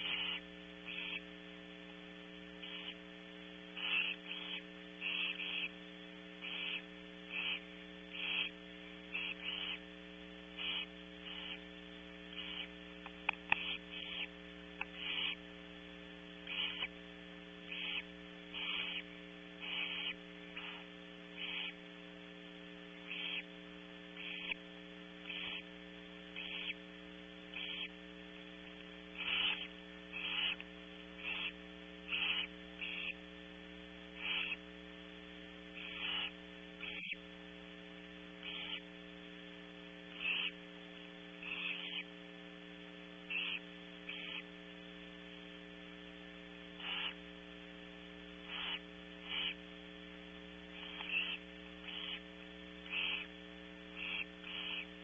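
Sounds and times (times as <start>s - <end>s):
owl nestlings hissing calls: 0.0s - 37.3s, 38.4s - 39.0s, 39.7s - 55.0s
steady electrical hum: 0.0s - 55.0s
sharp clicks: 13.0s - 13.7s.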